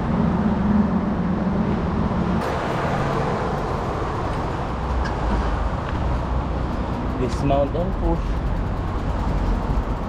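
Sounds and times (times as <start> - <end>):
low hum: 0.0 - 10.0
bicycle tyres rolling: 3.6 - 10.0.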